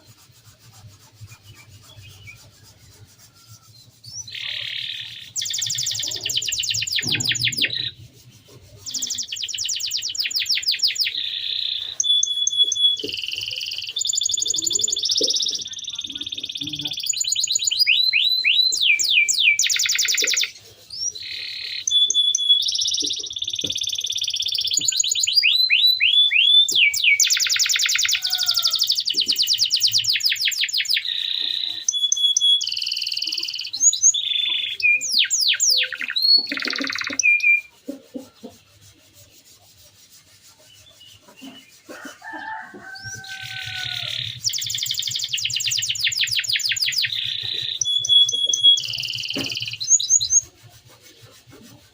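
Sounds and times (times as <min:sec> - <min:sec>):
bird lower gliding calls: 0:00.0 - 0:51.9
canary singing trills: 0:00.0 - 0:51.9.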